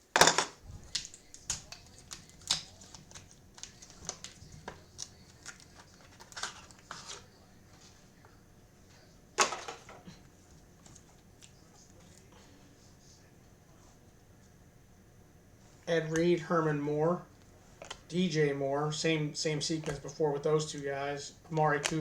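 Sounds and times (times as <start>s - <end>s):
cards and packaging rustling: 0.7s - 7.4s.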